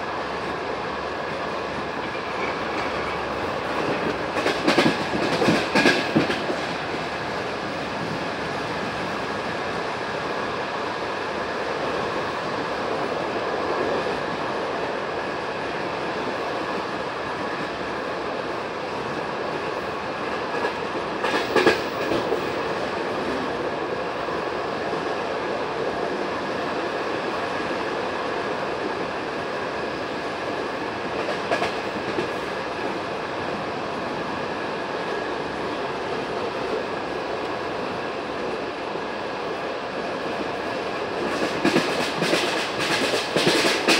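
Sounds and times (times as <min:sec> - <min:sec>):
train wheels rumbling on rails: 0:00.0 - 0:43.9
train wheel clacks: 0:02.0 - 0:07.0, 0:20.3 - 0:22.6, 0:31.0 - 0:33.0, 0:41.2 - 0:43.9.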